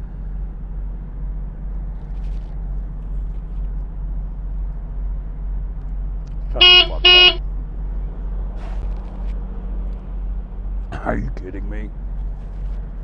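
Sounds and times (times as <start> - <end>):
steady low hum: 0.0 - 13.0
vehicle horn honks: 6.6 - 7.4.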